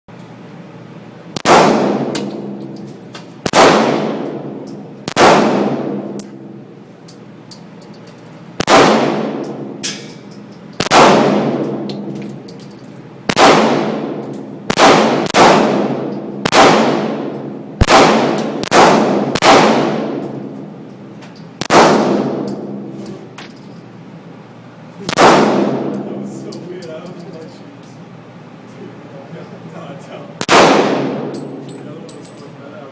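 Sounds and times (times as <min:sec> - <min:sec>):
handgun shots: 0:03.4 - 0:04.4, 0:05.0 - 0:05.9, 0:08.6 - 0:10.1, 0:10.8 - 0:12.1, 0:13.3 - 0:17.2, 0:17.8 - 0:20.4, 0:21.6 - 0:22.6, 0:30.4 - 0:31.5.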